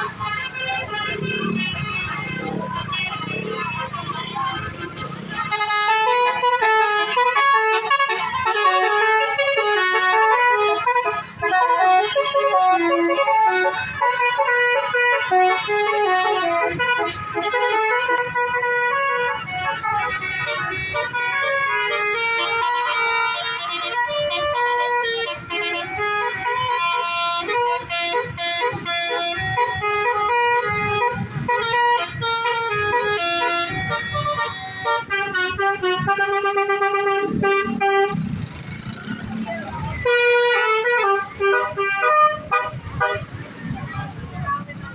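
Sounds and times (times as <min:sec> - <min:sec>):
bus horn playing a tune: 0:00.0 - 0:43.5.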